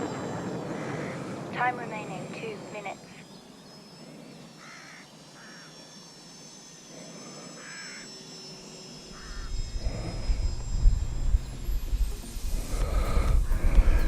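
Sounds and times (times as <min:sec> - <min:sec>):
bird calling: 0:00.0 - 0:06.1, 0:06.9 - 0:08.2, 0:09.1 - 0:09.8
low rumble: 0:09.4 - 0:14.0.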